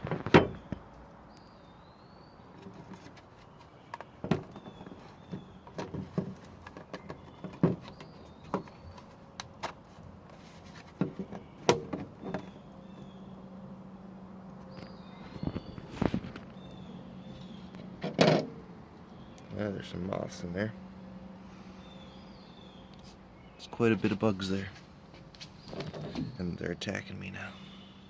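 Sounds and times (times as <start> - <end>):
low steady hum: 0.0 - 28.0
bird chirps: 0.4 - 2.7, 6.8 - 9.2, 11.3 - 13.6, 14.5 - 17.9, 19.0 - 20.2, 20.8 - 24.8, 25.4 - 28.0
knocks and clicks of handling: 2.5 - 13.1, 17.4 - 18.6.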